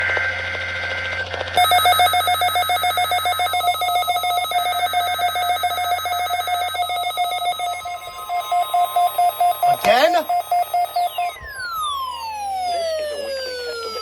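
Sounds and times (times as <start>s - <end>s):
two-tone digital data screech: 1.6s - 11.5s
weather radio alarm beeping: 1.6s - 14.0s.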